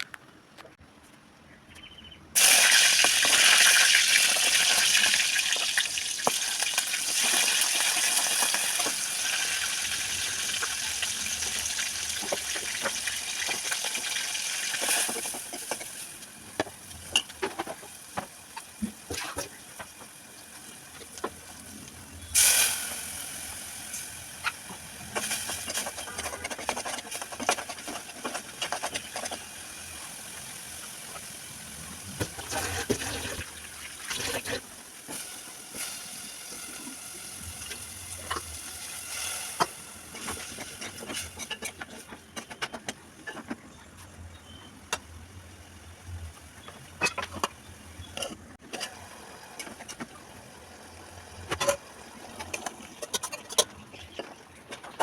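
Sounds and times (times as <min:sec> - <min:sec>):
vegetables sizzling in hot oil: 0:02.4 - 0:21.5, 0:22.4 - 0:41.7.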